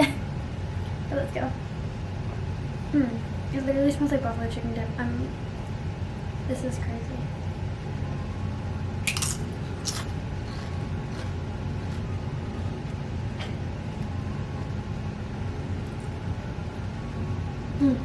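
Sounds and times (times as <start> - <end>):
steady low hum: 0.0 - 18.0
crunching tortilla chip: 9.1 - 13.0.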